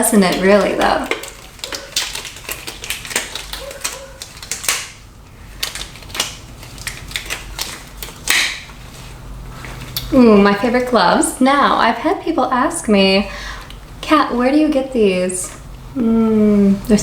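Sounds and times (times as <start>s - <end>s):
small objects clicking and tapping: 0.0s - 5.0s, 5.6s - 8.7s.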